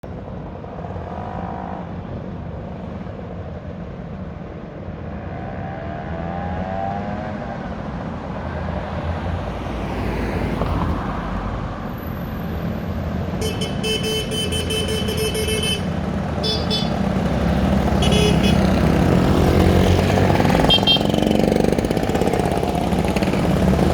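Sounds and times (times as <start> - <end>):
group of vehicle engines: 0.0 - 23.9
horns tooting: 13.4 - 23.9.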